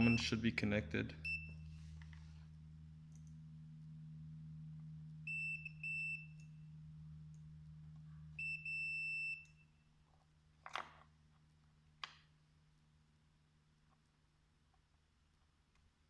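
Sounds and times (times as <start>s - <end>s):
multimeter beeps: 0.0s - 0.4s, 1.2s - 1.6s, 5.3s - 6.5s, 8.4s - 9.7s
steady low hum: 0.0s - 16.0s.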